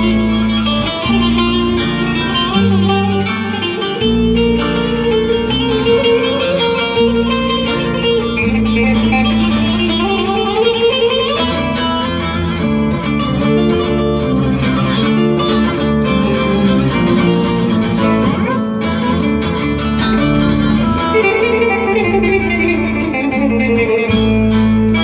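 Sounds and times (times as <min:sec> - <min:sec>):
plucked string instrumental music: 0:00.0 - 0:25.0.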